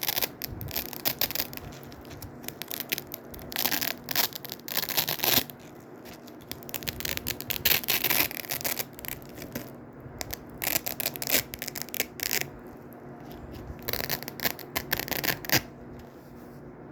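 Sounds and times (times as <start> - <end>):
hook-and-loop fastener ripping: 0.0 - 15.7.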